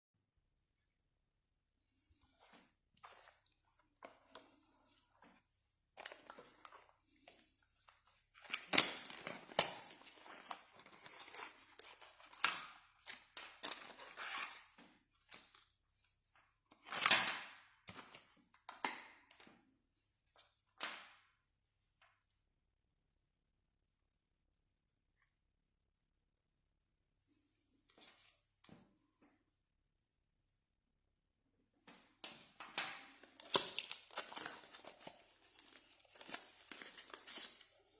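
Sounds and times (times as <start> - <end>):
packaging rustling and tearing: 33.1 - 37.9.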